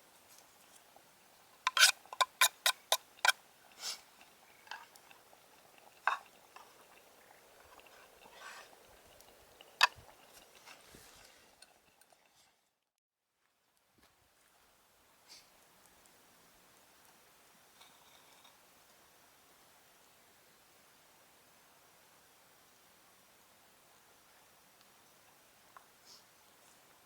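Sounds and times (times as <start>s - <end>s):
spoon clicking on mess tin: 1.7s - 3.4s.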